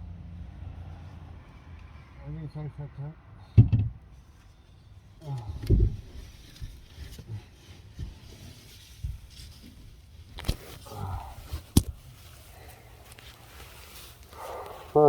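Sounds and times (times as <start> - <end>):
sharp knocks: 3.6 - 4.0
dull thumps: 5.4 - 7.3.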